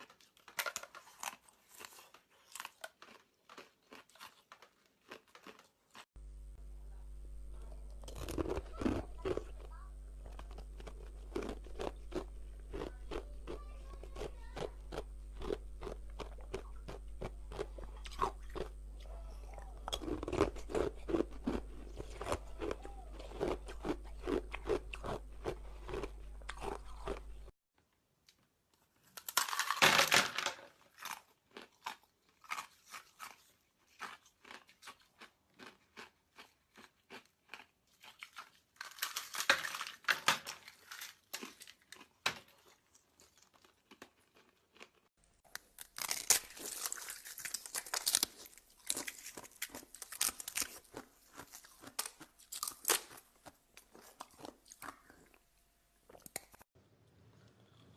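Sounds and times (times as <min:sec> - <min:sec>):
crunching and chewing ice: 0:00.0 - 0:06.1, 0:07.3 - 0:27.6, 0:29.0 - 0:55.4
low steady hum: 0:06.2 - 0:27.6.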